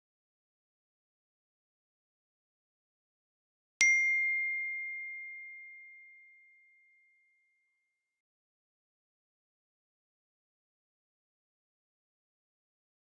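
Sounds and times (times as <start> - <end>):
bright ding: 3.8 - 7.1.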